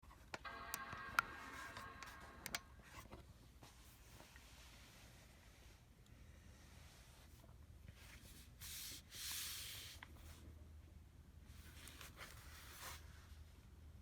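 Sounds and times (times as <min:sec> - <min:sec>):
rubbing and rustling handling noise: 0:11.5 - 0:13.6.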